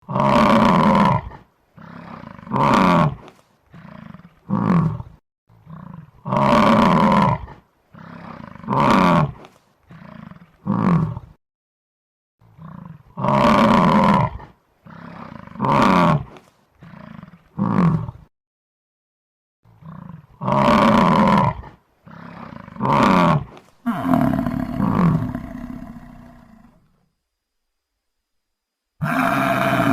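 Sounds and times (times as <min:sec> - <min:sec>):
bison bellowing: 0:19.8 - 0:26.9, 0:29.0 - 0:29.9.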